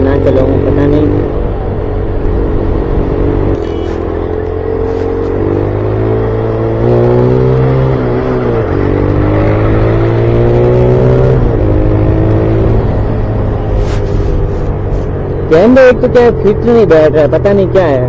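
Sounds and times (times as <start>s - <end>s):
motorcycle engine revving through gears: 2.0s - 15.2s.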